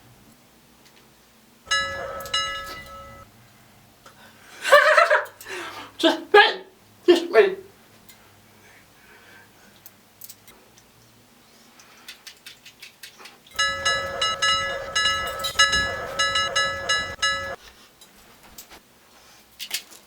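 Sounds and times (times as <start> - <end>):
pulsing ringing test chord: 1.7 - 3.2, 13.6 - 17.6.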